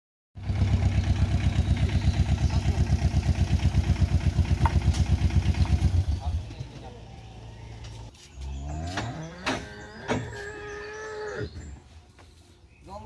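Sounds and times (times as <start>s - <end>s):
engine idling: 0.4s - 8.1s.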